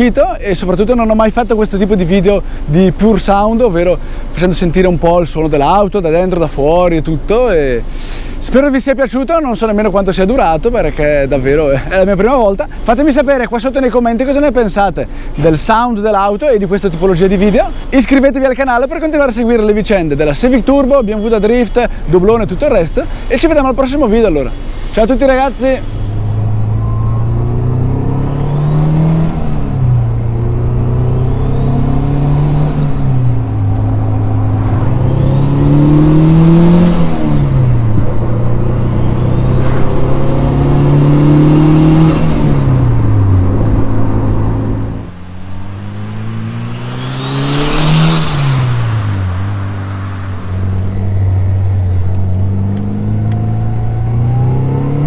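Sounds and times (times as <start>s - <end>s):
car engine revving: 22.2s - 55.0s
turbo whistle: 25.8s - 29.4s.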